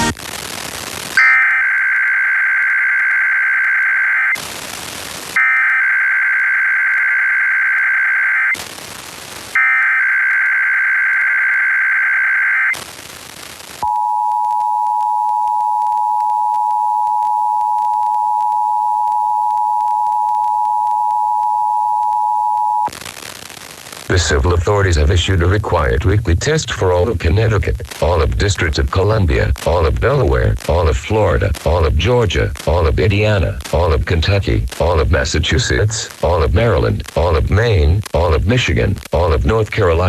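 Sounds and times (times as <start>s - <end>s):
warbling digital data tones: 1.2s - 4.4s
radio hiss: 22.9s - 40.0s.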